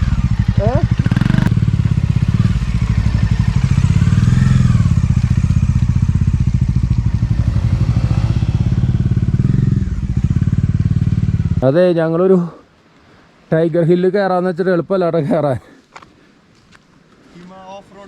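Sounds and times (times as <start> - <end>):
motorcycle engine revving: 0.0 - 11.6.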